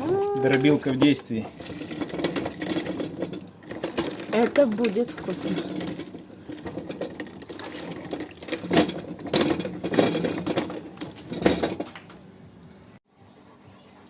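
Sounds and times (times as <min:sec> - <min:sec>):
wet squelching of crushed grapes: 0:03.5 - 0:09.2.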